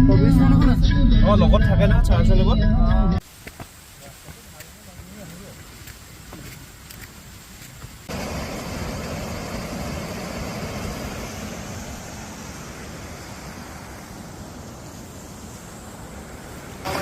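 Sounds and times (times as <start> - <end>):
waterfall roaring: 7.8 - 17.0.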